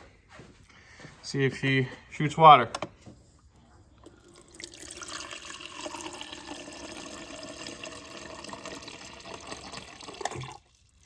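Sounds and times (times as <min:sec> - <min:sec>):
water dispenser hissing: 0:04.1 - 0:10.8.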